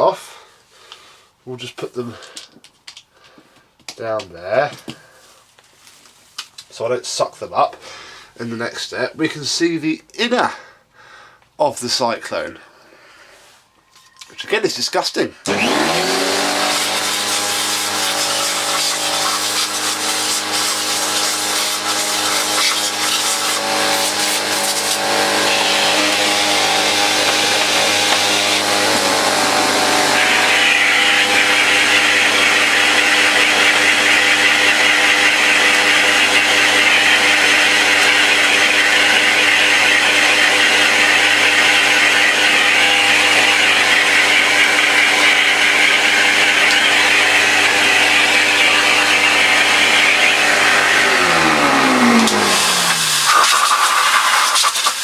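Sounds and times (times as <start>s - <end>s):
vacuum cleaner running: 15.5s - 55.0s
rushing air hiss: 52.9s - 55.0s.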